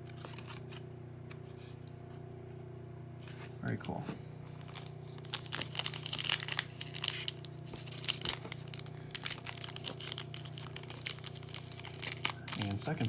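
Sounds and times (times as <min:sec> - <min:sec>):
steady low hum: 0:00.0 - 0:13.0
foil card pack crinkling and tearing: 0:04.5 - 0:13.0.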